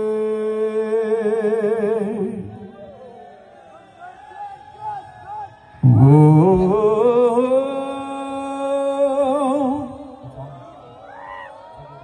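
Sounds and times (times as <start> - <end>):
person singing long note: 0.0 - 3.2, 5.8 - 10.7.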